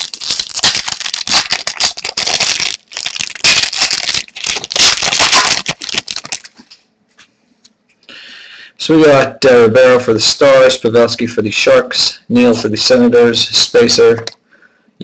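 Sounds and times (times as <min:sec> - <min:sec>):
foil wrapper tearing and crinkling: 0:00.0 - 0:06.8.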